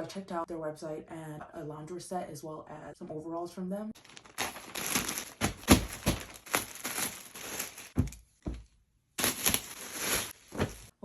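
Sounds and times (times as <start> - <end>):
packaging crinkling and rustling: 4.0 - 8.1, 9.2 - 11.0.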